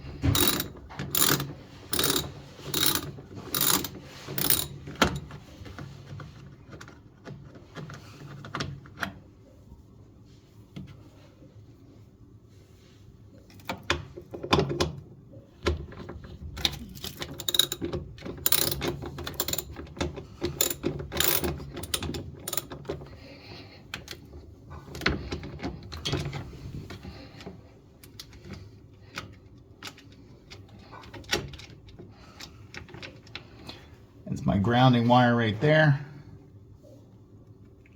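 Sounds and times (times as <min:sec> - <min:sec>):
socket ratchet clicking: 0:00.3 - 0:05.2, 0:17.1 - 0:17.8, 0:18.4 - 0:19.7, 0:20.6 - 0:22.7.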